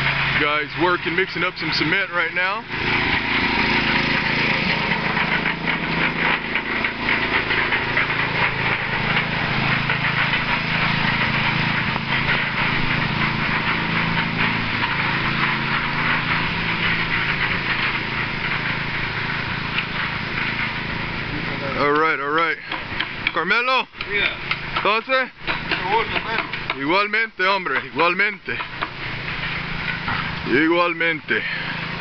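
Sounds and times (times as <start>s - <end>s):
cement mixer running: 0.0s - 32.0s.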